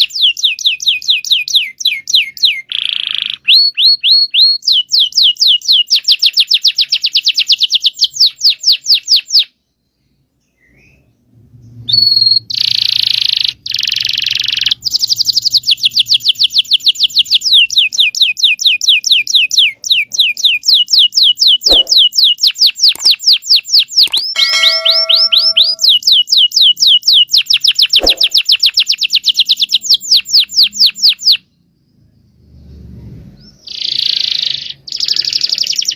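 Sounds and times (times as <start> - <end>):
canary trilling: 0.0 - 9.5, 11.9 - 31.5, 33.5 - 35.9.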